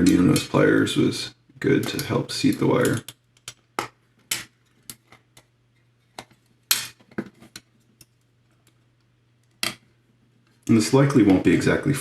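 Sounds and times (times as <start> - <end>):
pliers and wire clicking on plastic: 1.8 - 5.5.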